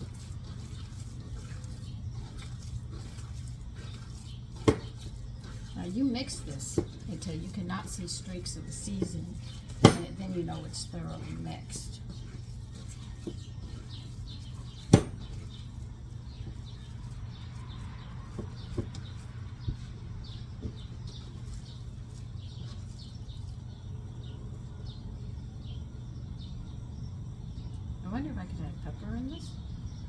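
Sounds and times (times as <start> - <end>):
wet squishing of ground meat: 0.0 - 7.6, 12.0 - 20.0
steady low hum: 0.0 - 30.0.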